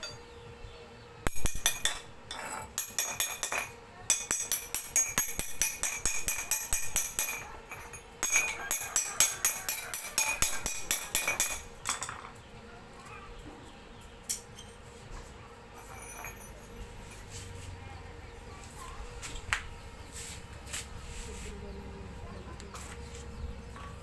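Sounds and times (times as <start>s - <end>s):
metal-on-metal tapping and clinking: 0.0s - 0.2s, 1.3s - 12.5s, 14.2s - 14.8s, 15.8s - 17.3s.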